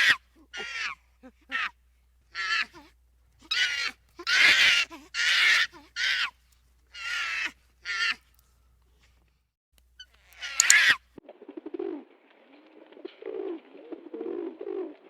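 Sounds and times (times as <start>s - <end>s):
animal harsh calls: 3.4s - 6.3s, 6.9s - 8.2s, 10.3s - 11.0s.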